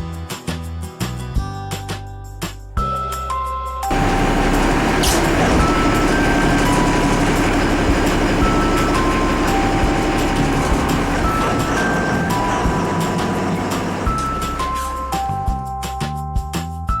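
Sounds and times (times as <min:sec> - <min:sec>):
water noise: 0:03.9 - 0:15.3
boat engine running: 0:03.9 - 0:15.5
slow tune of held notes: 0:03.9 - 0:15.6.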